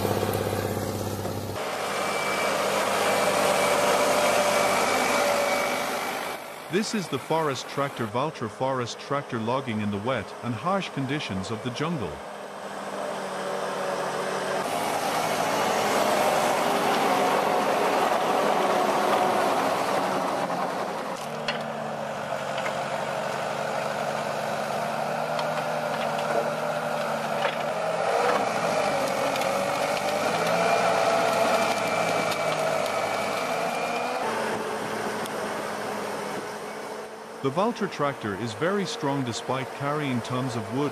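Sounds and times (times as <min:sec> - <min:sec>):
tractor diesel engine running: 0:00.0 - 0:40.9
clicks and rattles: 0:25.3 - 0:27.7.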